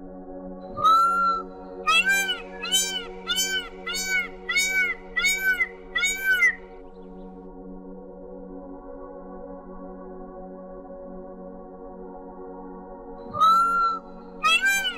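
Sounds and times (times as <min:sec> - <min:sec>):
soft ambient music: 0:00.0 - 0:14.9
high mewing animal calls: 0:00.8 - 0:06.7, 0:13.4 - 0:14.9.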